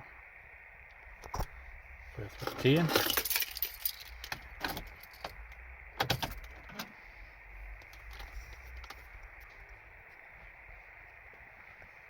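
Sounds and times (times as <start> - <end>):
low steady hum: 0.0 - 12.0
sharp ignition clicks: 2.4 - 6.9
keys jangling: 2.9 - 5.3.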